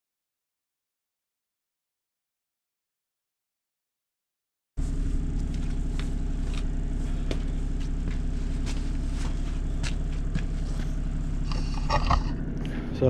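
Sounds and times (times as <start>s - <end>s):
heavy digging machine engine: 4.8s - 13.0s.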